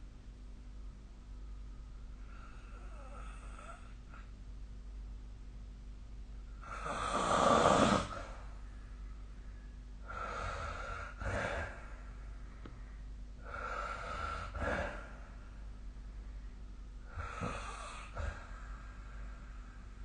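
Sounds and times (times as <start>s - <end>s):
person snoring with snorts: 6.6s - 8.4s, 10.1s - 11.8s, 17.1s - 18.5s.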